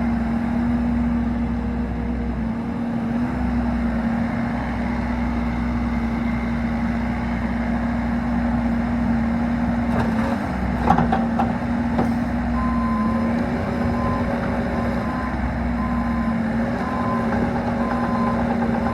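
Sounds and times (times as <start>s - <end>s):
excavator diesel engine running: 0.0s - 18.9s.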